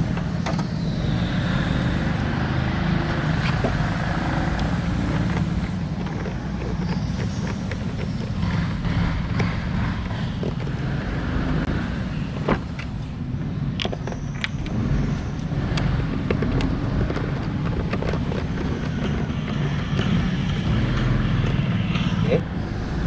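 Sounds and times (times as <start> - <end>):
steady low rumble: 3.0 - 23.0
clicks and taps of parts handled: 13.8 - 14.7.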